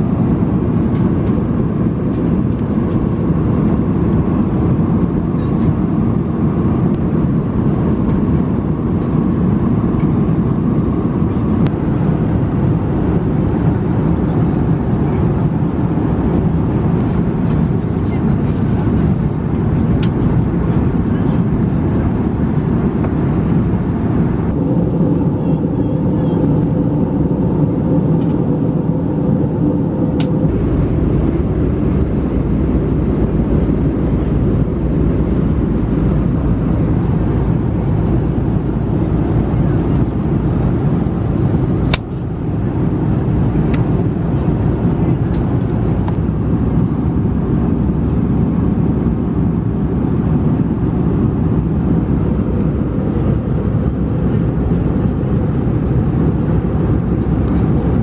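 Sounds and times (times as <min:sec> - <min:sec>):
airliner cabin engine drone: 0:00.0 - 0:58.0.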